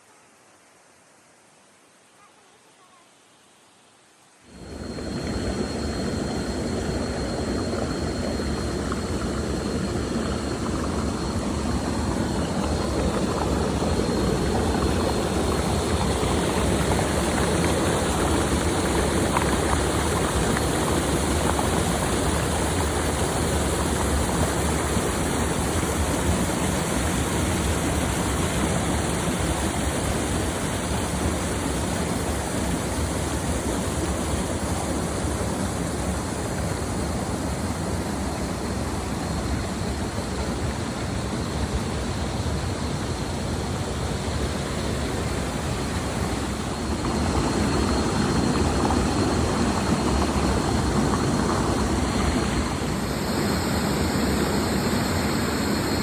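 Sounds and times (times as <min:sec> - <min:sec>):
faint high whine: 0:00.0 - 0:56.0
waterfall rushing: 0:44.4 - 0:56.0.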